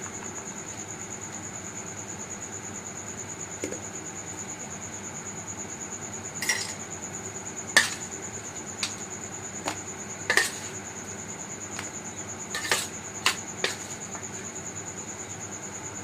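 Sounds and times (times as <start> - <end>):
cricket trilling: 0.0 - 16.0
dishes and utensils clinking: 6.4 - 6.8, 7.8 - 8.0, 10.3 - 10.7, 12.6 - 13.9.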